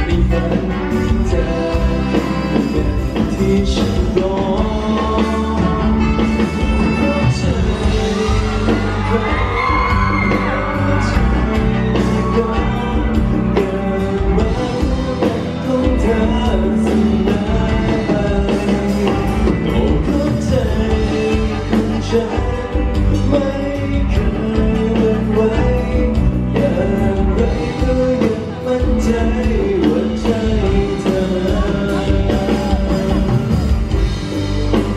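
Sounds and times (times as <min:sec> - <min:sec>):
live band playing pop song: 0:00.0 - 0:34.9
person singing: 0:00.0 - 0:34.9
audience whooping: 0:07.4 - 0:14.0.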